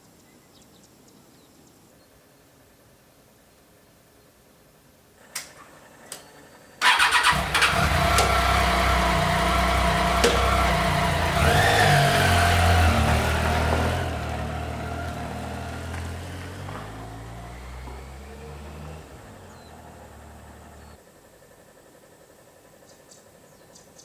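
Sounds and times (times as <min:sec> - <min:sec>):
motorcycle engine running: 0:06.8 - 0:22.8.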